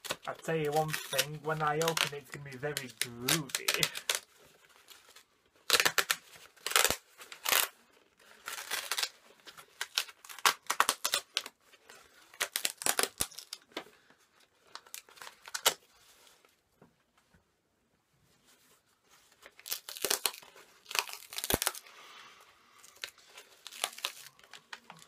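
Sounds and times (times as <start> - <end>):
packaging tearing and crinkling: 0.0 - 13.8, 14.6 - 15.9, 19.4 - 21.9, 22.8 - 25.0.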